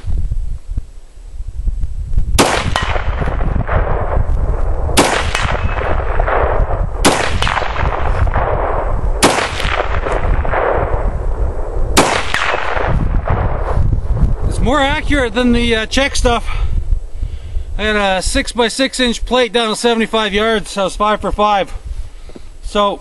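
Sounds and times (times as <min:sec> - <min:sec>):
rifle shots with rolling echo: 0:02.4 - 0:13.7.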